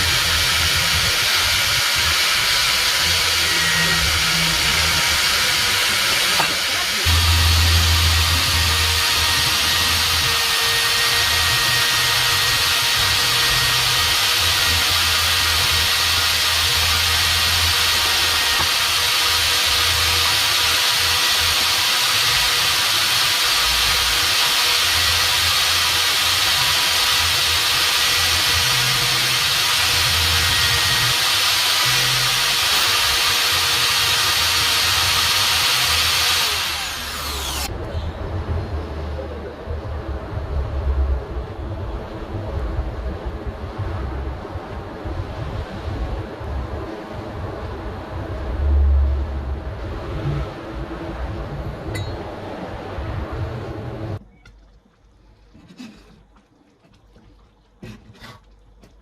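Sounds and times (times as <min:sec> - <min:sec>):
motor spinning down: 0:00.0 - 0:37.7
power grinder on metal: 0:00.0 - 0:37.7.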